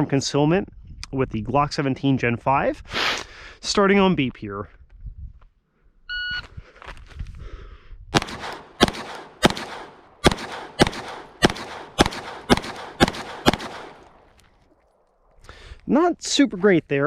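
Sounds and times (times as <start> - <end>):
pistol shots: 8.2 - 15.1.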